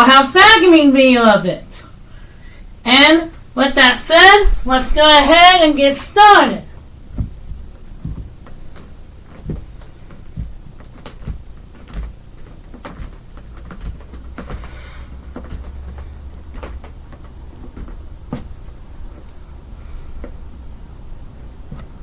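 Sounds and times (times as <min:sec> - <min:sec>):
handling clicks and knocks: 0:07.0 - 0:19.6, 0:21.6 - 0:22.0.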